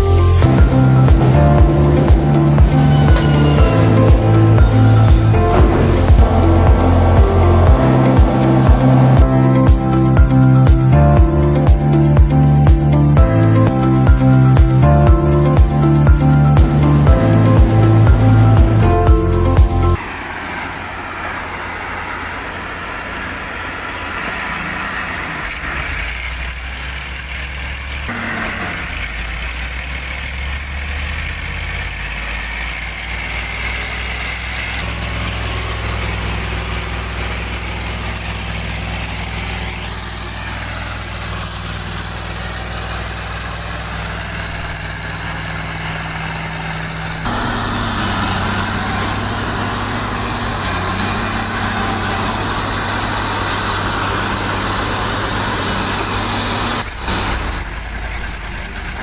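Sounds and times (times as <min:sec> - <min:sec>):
wood-processing machinery humming: 0:00.1 - 0:30.4, 0:33.3 - 0:59.0.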